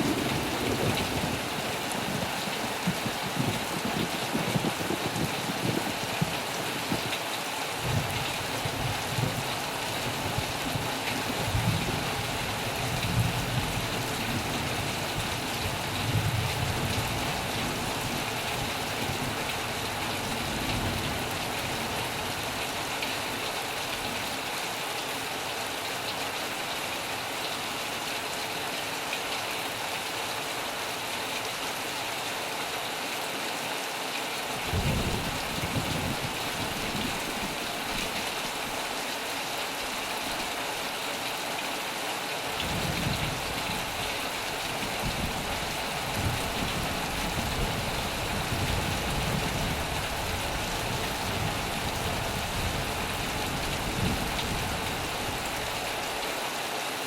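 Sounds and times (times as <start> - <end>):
thunder rumbling: 0.0 - 6.4, 34.7 - 38.2, 42.6 - 44.1
heavy rain on a metal roof: 0.0 - 57.0.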